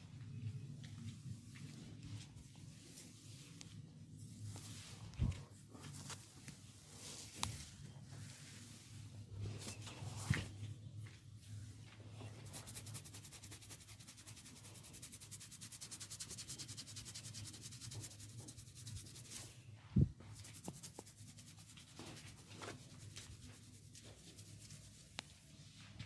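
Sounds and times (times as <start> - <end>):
hands rubbing scalp and hair: 12.4 - 19.6, 20.2 - 25.5.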